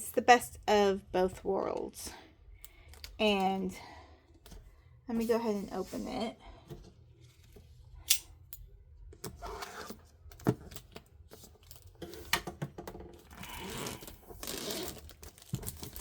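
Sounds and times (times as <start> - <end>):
packaging scraping and rustling: 13.2 - 16.0.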